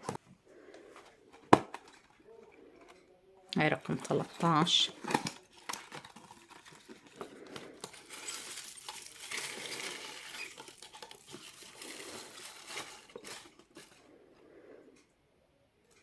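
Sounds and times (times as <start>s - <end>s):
cardboard box wrapping crinkling: 3.8s - 14.0s.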